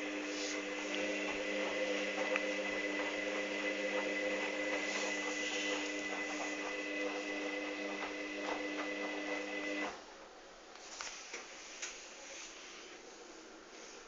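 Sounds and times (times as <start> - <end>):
washing machine motor whining: 0.0 - 10.0.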